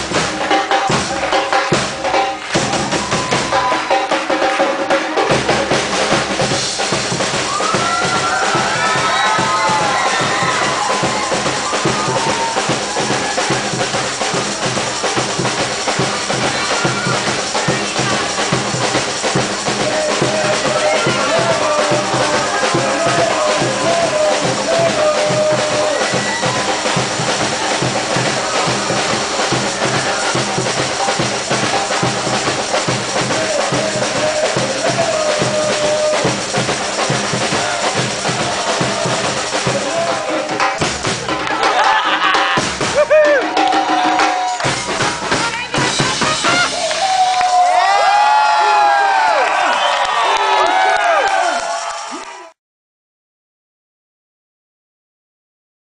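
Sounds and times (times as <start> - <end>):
percussion band drumming: 0.0 - 52.3
deep bass drums: 5.3 - 41.4.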